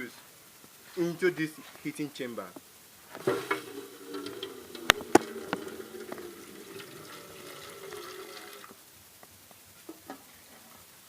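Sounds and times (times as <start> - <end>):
liquid pouring: 3.2 - 8.8.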